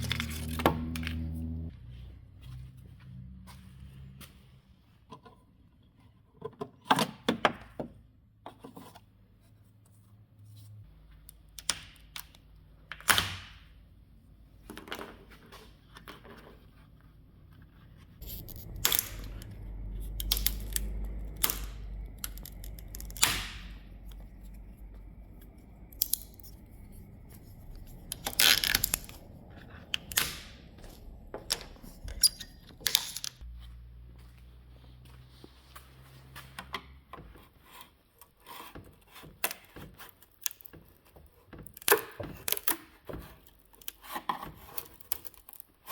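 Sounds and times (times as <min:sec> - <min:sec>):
scraping or tearing strokes: 0:18.1 - 0:30.2
low rumble: 0:18.2 - 0:33.7.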